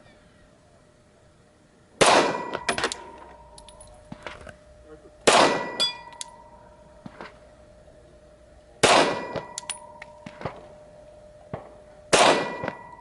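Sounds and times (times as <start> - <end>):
pistol shots: 2.0 - 3.1, 5.2 - 6.0, 8.8 - 10.6, 11.5 - 12.9
ringing metallic tone: 2.2 - 13.0
light metal clinks: 2.7 - 4.2.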